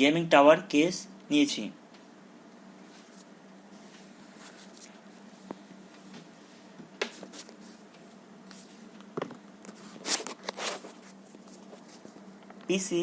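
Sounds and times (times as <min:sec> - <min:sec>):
faint steady hum: 0:00.0 - 0:13.0
rustling scrapes: 0:02.8 - 0:05.5, 0:06.4 - 0:08.9, 0:09.7 - 0:12.2.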